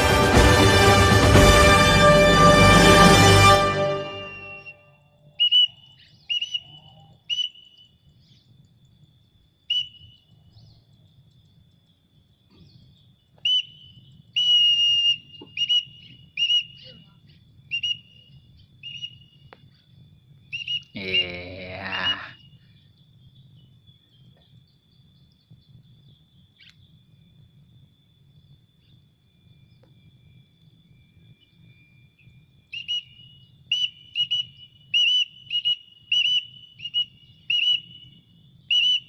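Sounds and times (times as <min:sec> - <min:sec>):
louder fuller sound: 0:00.0 - 0:04.7
short high whistles: 0:02.4 - 0:07.9, 0:09.7 - 0:10.2, 0:13.4 - 0:19.5, 0:32.7 - 0:39.0.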